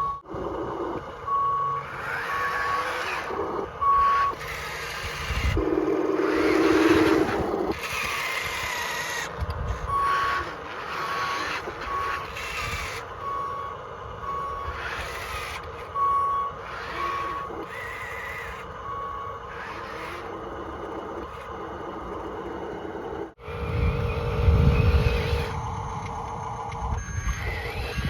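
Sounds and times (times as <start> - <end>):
electric motor whir: 0.0 - 28.0
short high reversing beeps: 1.2 - 3.0, 3.8 - 7.0, 9.7 - 20.5, 23.7 - 28.0
loud low hum: 23.4 - 28.0.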